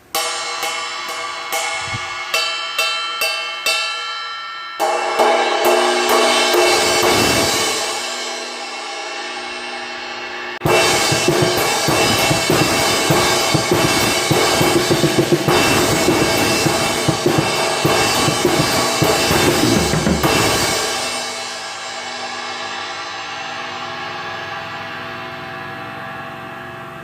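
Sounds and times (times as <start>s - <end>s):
drum kit groove: 0.0s - 9.2s, 10.6s - 22.9s
cymbal ringing: 0.0s - 27.0s.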